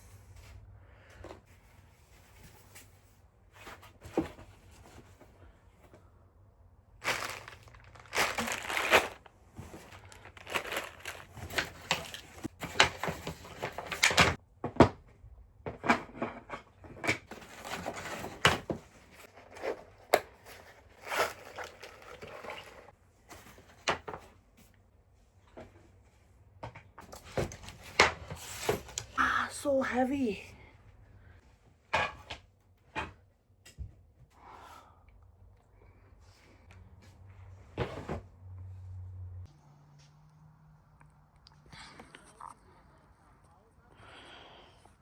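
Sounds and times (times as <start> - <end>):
packaging crinkling and rustling: 7.0 - 14.4, 17.2 - 22.9.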